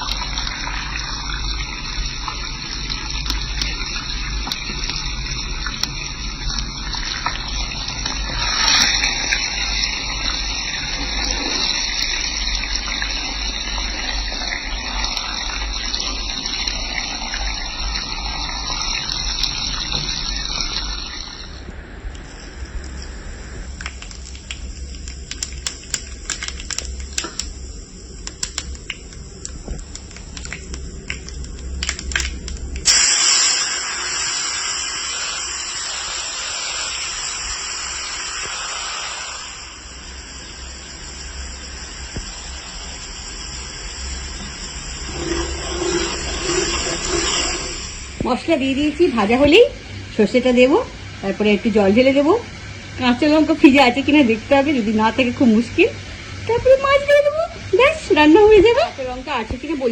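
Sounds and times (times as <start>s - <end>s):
fish sizzling in hot oil: 0.0s - 59.9s
sharp clicks: 23.8s - 32.9s.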